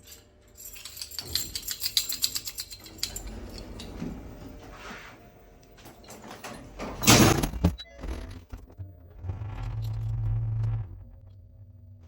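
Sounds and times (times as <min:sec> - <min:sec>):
keys jangling: 0:00.0 - 0:04.2.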